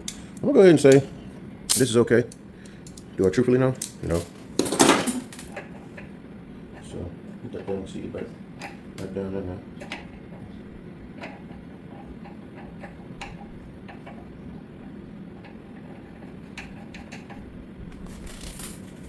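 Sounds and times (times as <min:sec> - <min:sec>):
metal parts clicking and tapping: 0:00.0 - 0:01.1, 0:01.7 - 0:06.1
low steady background noise: 0:00.0 - 0:19.0.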